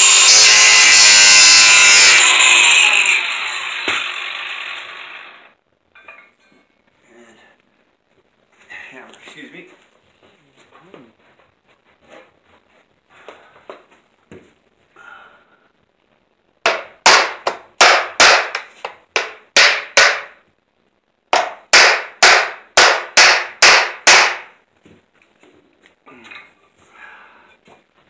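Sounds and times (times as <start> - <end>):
hammer striking aluminum track: 0.0 - 5.0, 16.7 - 20.4, 21.4 - 24.5.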